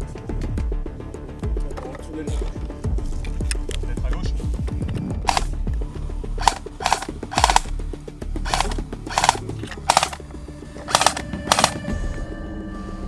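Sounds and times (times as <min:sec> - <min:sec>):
airsoft gun shots: 0:05.3 - 0:05.5, 0:06.4 - 0:07.7, 0:08.5 - 0:10.2, 0:10.9 - 0:11.9.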